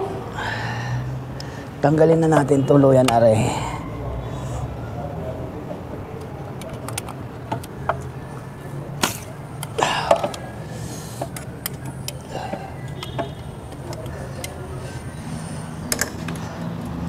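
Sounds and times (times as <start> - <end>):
tools and parts clinking: 6.2 - 8.1, 11.2 - 15.0.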